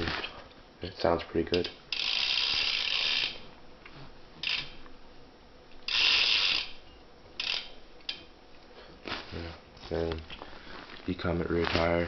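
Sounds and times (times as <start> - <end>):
bicycle hub ratcheting buzz: 1.6 - 3.5, 4.4 - 4.9, 5.8 - 8.3.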